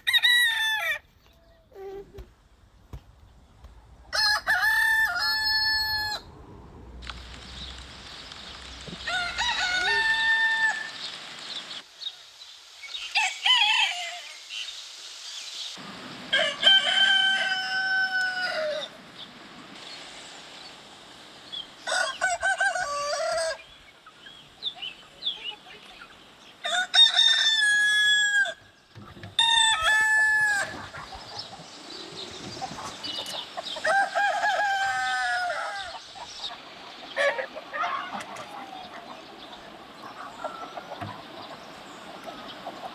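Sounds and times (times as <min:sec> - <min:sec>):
rooster crowing: 0:00.0 - 0:01.0, 0:04.1 - 0:06.8, 0:08.8 - 0:11.1, 0:16.3 - 0:19.0, 0:21.8 - 0:23.6, 0:26.6 - 0:28.7, 0:29.4 - 0:31.1, 0:33.7 - 0:36.0.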